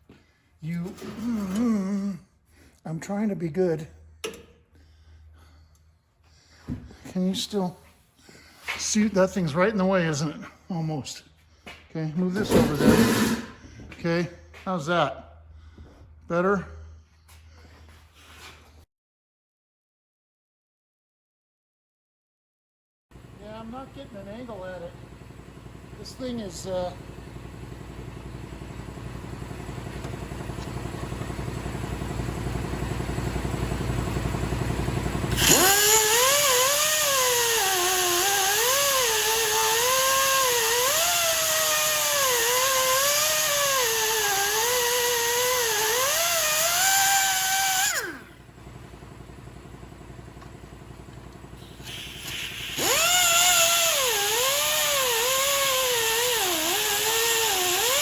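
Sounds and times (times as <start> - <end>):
grinder cutting metal: 12.6 - 13.5, 35.1 - 48.3, 51.6 - 58.0.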